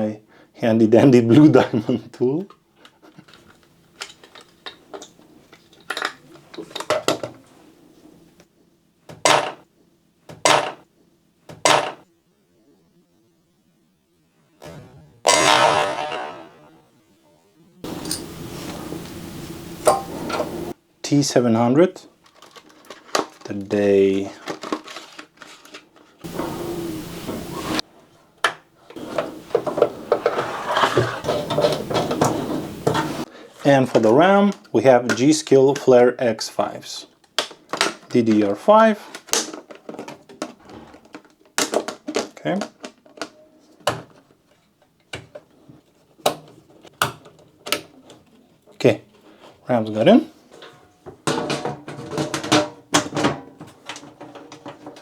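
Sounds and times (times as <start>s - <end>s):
metal parts and tool clinking: 17.9s - 20.7s, 24.4s - 27.8s, 29.0s - 33.3s
packaging rustling: 22.2s - 27.8s
short scrapes: 29.0s - 33.3s.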